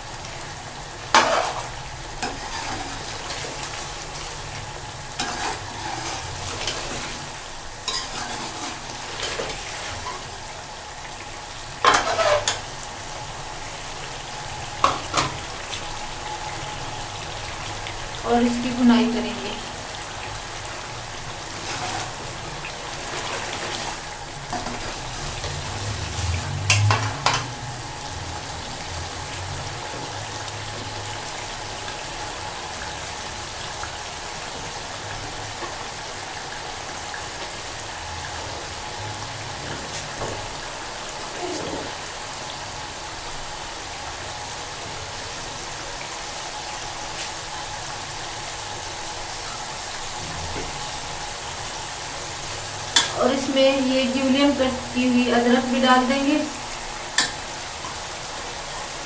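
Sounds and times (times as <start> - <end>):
food sizzling in a pot: 0.0 - 59.0.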